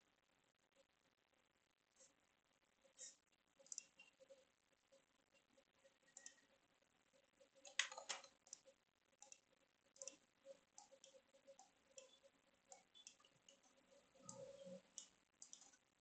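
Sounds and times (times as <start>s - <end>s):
mouse and keyboard clicks: 3.6s - 4.2s, 7.6s - 9.4s, 10.0s - 15.8s.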